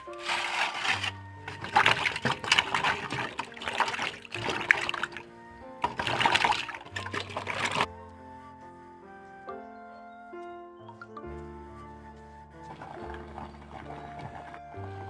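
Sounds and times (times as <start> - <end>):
water splashing and trickling: 0.0 - 7.9, 10.9 - 15.0
background music: 0.0 - 15.0.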